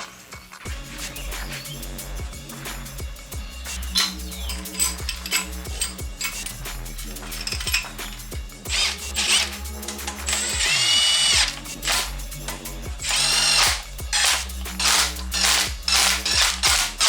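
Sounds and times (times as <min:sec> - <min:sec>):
power tool whining: 0:08.7 - 0:09.6, 0:10.3 - 0:12.1, 0:13.0 - 0:17.0.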